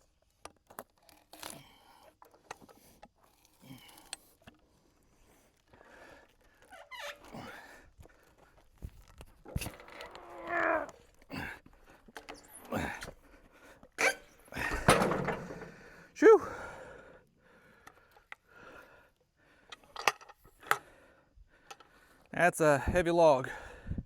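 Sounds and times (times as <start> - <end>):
man grunting and breathing hard: 12.6 - 13.1, 15.5 - 17.2.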